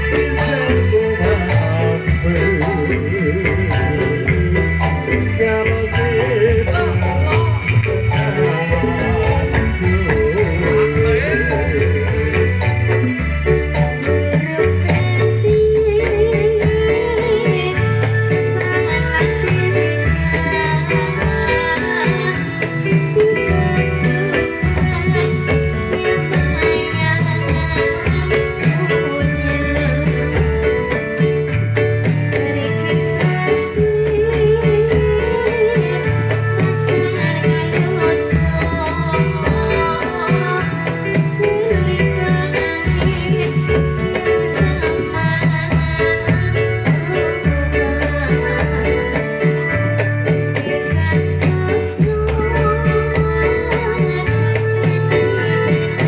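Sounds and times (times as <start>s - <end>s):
person singing ornamented melody: 0.0s - 31.1s
steady low drum beat: 0.0s - 32.6s
frame drums: 0.0s - 56.0s
jingling percussion: 0.0s - 56.0s.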